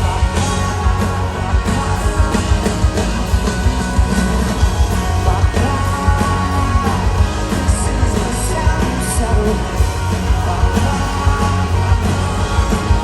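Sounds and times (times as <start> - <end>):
bass guitar: 0.0 - 13.0
drums: 0.0 - 13.0
electric guitars: 0.0 - 13.0
person singing: 5.1 - 13.0.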